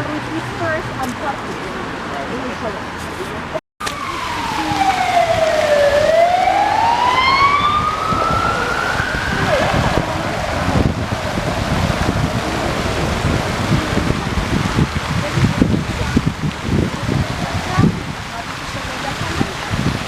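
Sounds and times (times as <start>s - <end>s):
emergency siren wailing: 3.8s - 14.6s.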